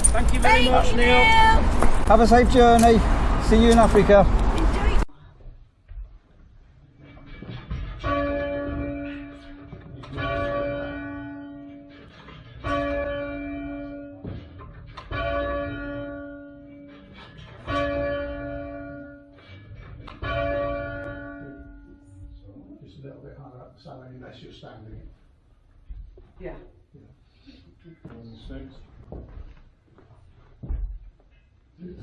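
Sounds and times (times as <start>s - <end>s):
church bell ringing: 8.0s - 22.4s.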